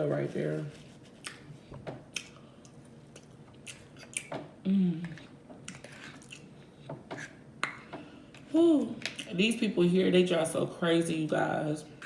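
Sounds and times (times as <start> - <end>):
person chewing food: 1.0 - 4.4, 5.0 - 9.3
person humming falling pitch: 4.6 - 5.2.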